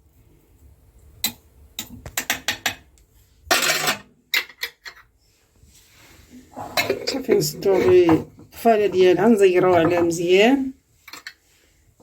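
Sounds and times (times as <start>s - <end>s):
lid scraping: 6.5s - 10.2s.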